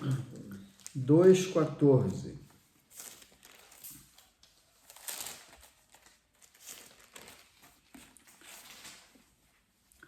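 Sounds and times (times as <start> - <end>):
thin pages rustling: 2.0 - 9.8.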